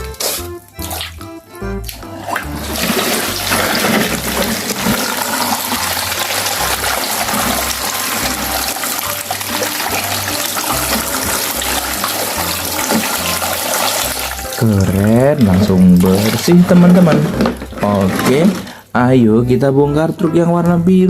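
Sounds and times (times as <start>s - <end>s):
water running over toy truck: 2.3s - 18.7s.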